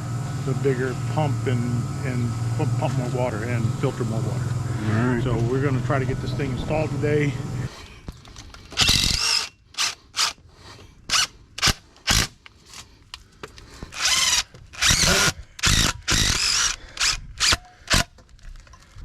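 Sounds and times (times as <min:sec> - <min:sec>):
handheld power tool running: 0:08.6 - 0:10.4, 0:11.1 - 0:12.4, 0:13.9 - 0:18.1.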